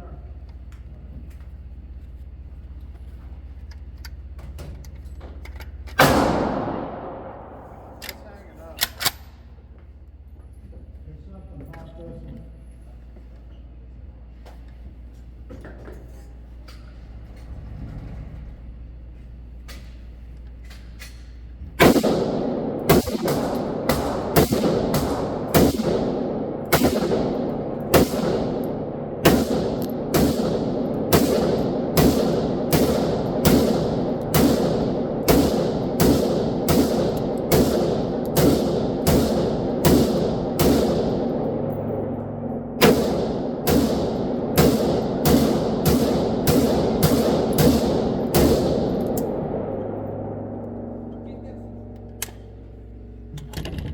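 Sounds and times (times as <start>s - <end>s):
pistol shots: 6.0s - 8.2s, 21.8s - 50.9s.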